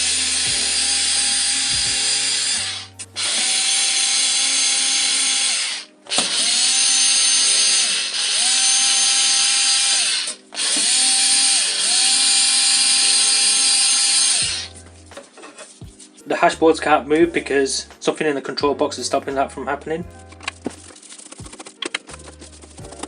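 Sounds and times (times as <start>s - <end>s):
drill-driver motor whine: 0.0s - 14.7s.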